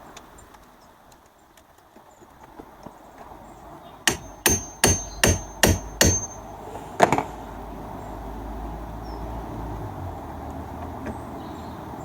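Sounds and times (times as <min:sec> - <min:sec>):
loud double knock: 0:04.1 - 0:06.4.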